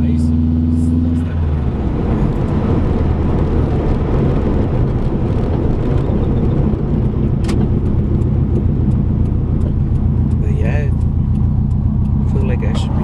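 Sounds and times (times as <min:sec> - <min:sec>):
car engine and tyres rumbling: 0:00.0 - 0:13.0
sharp click: 0:07.4 - 0:13.0.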